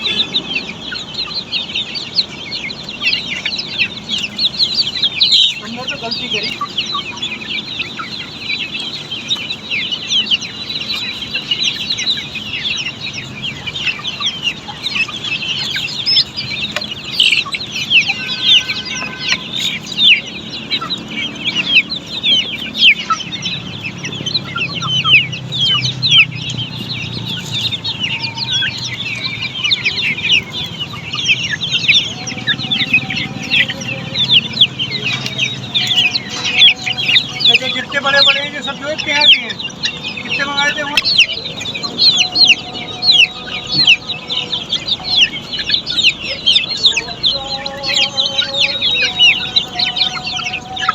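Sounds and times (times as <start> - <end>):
chicks peeping: 0.0 - 50.9.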